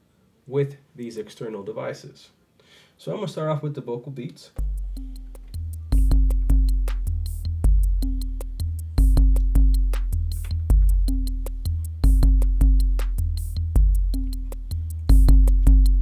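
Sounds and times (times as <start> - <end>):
deep bass line: 4.6 - 16.0
hi-hat ticks: 4.6 - 16.0.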